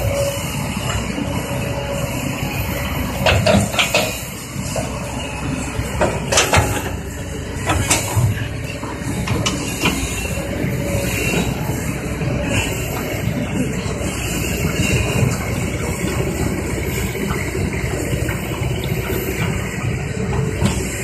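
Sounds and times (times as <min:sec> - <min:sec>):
excavator diesel engine running: 0:00.0 - 0:21.0
sharp knocks and clanks: 0:03.2 - 0:04.2, 0:06.0 - 0:07.0.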